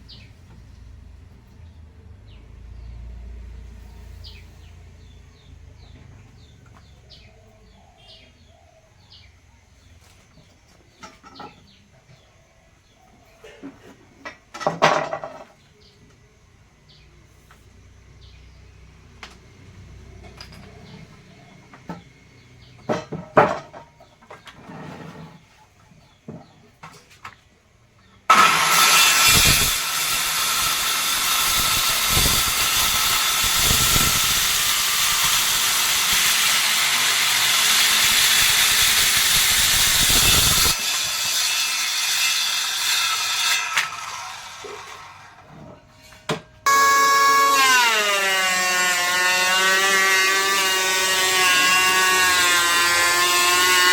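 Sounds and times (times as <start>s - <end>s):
power tool running: 28.3s - 45.4s, 46.7s - 53.9s.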